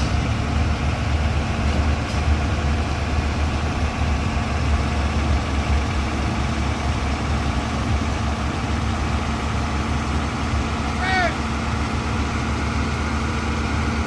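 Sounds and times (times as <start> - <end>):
diesel engine idling: 0.0 - 14.0.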